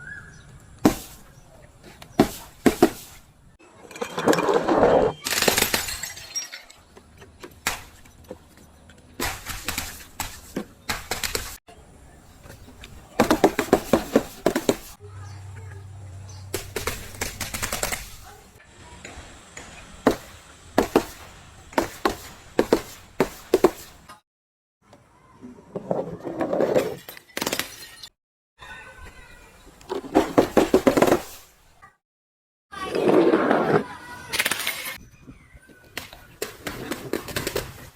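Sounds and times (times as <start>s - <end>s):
glass shattering: 3.8s - 6.9s.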